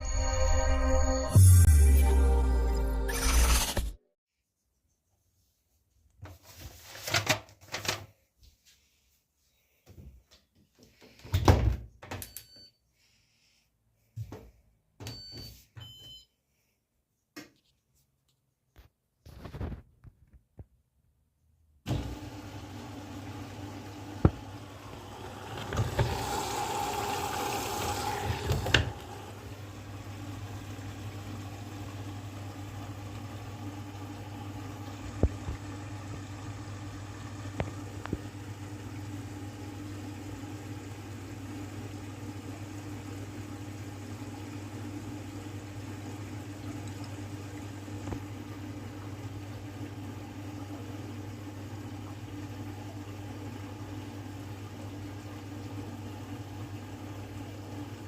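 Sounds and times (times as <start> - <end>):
washing machine motor hum: 21.9 - 58.0.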